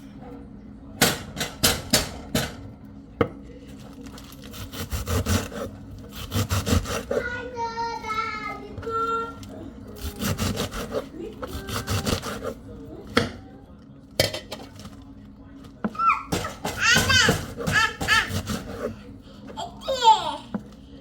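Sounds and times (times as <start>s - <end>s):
knife chopping on wooden board: 4.6s - 7.2s, 10.0s - 13.4s, 16.3s - 19.0s.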